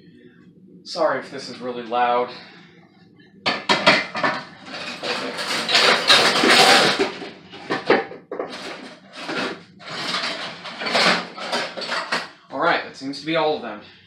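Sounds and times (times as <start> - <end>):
pots and dishes clattering: 3.4 - 12.4.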